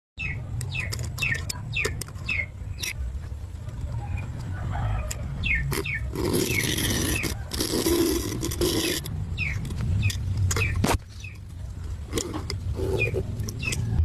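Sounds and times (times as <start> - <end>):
rushing scraping noise: 5.5 - 14.0.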